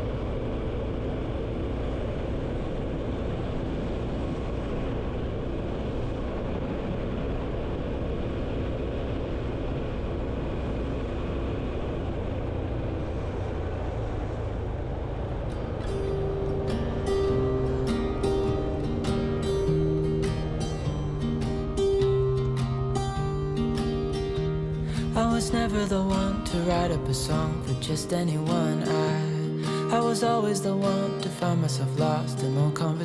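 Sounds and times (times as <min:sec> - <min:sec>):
wind and road noise: 0:00.0 - 0:28.5
motorcycle engine cruising: 0:11.5 - 0:28.5.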